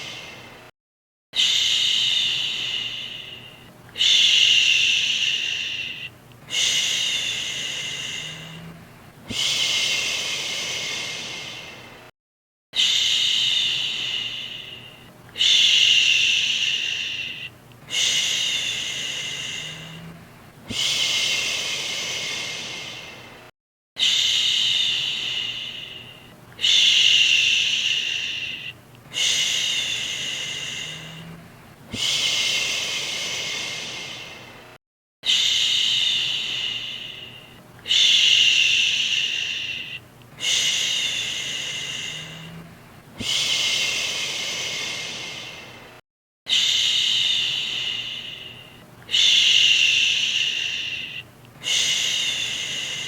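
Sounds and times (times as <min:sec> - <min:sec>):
woman whispering shhh: 0:35.2 - 0:42.6, 0:46.5 - 0:53.0.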